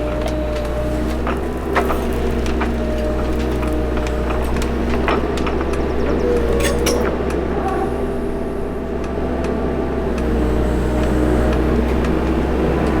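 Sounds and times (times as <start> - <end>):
excavator diesel engine droning: 0.0 - 13.0
metal clanks and scrapes: 6.1 - 7.8.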